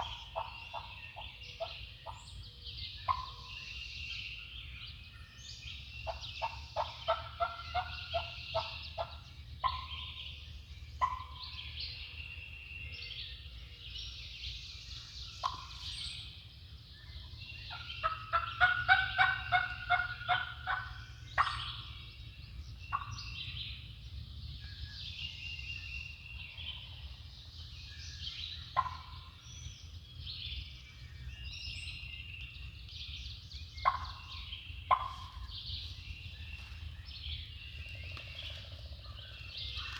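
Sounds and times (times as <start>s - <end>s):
wild turkeys gobbling: 0.0s - 2.2s, 3.0s - 3.5s, 6.0s - 10.2s, 11.0s - 11.5s, 15.4s - 15.9s, 17.6s - 22.0s, 22.9s - 23.2s, 28.7s - 29.4s, 33.8s - 35.6s
songbirds dawn chorus: 0.0s - 39.9s.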